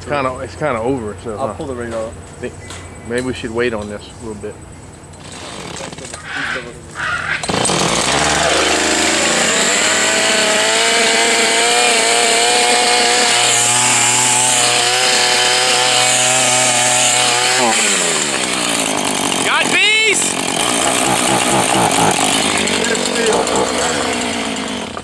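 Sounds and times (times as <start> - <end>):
chainsaw revving: 5.2 - 6.2, 7.0 - 25.0.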